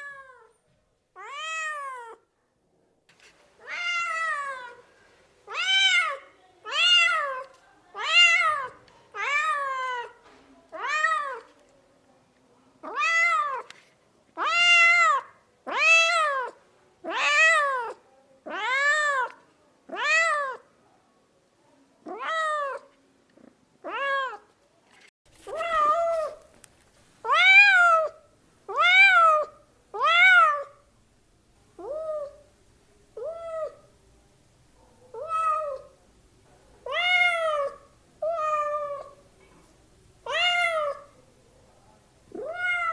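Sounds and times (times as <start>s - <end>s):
cat meowing: 1.2s - 2.2s, 27.2s - 30.8s, 31.8s - 32.4s, 33.2s - 33.9s, 35.1s - 36.0s, 36.8s - 39.2s, 40.2s - 41.2s, 42.3s - 42.9s.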